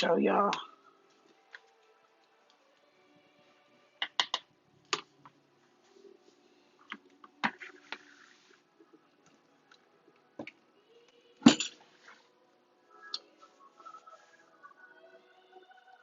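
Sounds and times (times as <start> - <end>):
utensils and cookware clattering: 11.5 - 11.9.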